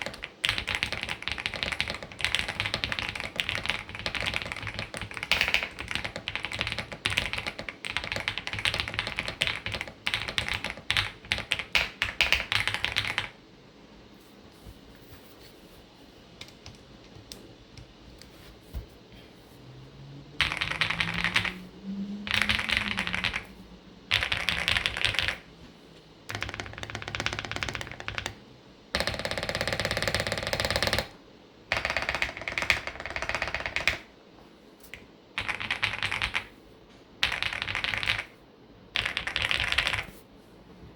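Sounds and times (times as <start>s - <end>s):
mechanical keyboard typing: 0.0s - 13.4s, 20.4s - 23.5s, 24.1s - 25.5s, 26.3s - 28.4s, 29.0s - 34.1s, 34.9s - 36.5s, 37.2s - 38.3s, 39.0s - 40.2s.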